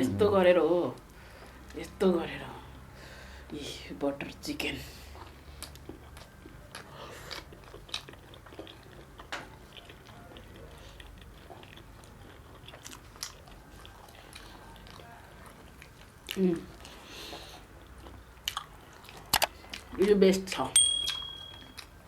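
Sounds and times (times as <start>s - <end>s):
chewing food close up: 4.6s - 22.0s
wet mouth clicks and smacks: 18.4s - 20.0s.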